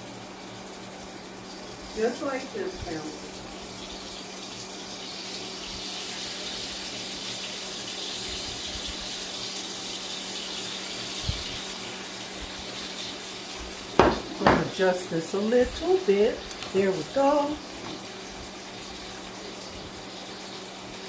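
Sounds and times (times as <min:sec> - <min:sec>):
steak sizzling in a frying pan: 0:00.0 - 0:21.0
short knock: 0:14.0 - 0:14.7.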